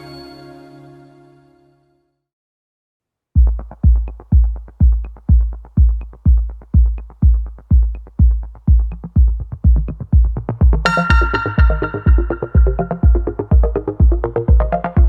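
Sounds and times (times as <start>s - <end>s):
drum machine kick drum: 3.4s - 15.0s.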